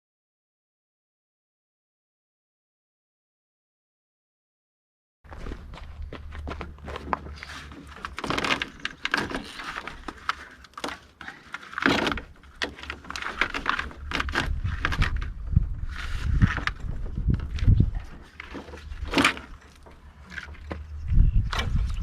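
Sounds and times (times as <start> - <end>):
hands handling wires and connectors: 5.4 - 22.0.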